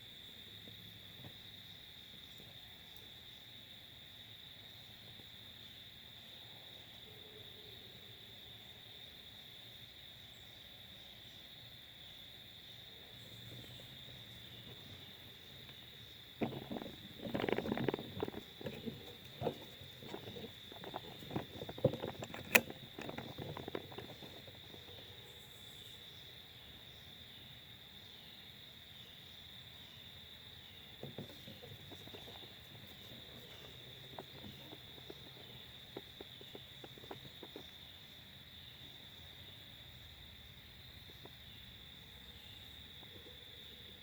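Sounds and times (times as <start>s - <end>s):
crickets chirping: 0.0s - 44.0s
faint ticks: 30.9s - 38.2s.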